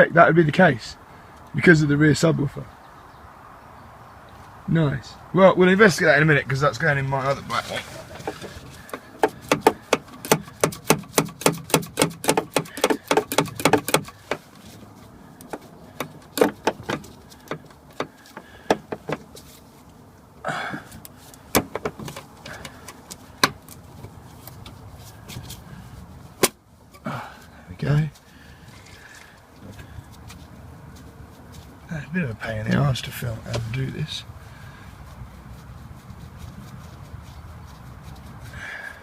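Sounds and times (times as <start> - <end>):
tool scraping metal: 7.5 - 14.5
knocks on metal: 9.2 - 14.4, 16.0 - 19.2.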